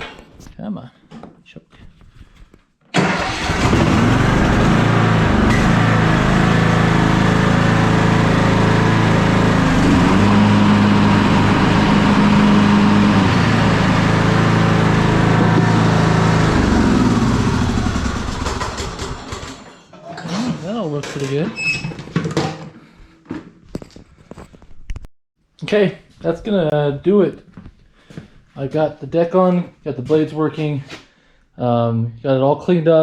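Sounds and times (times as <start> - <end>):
lawn mower engine running: 3.0 - 19.8.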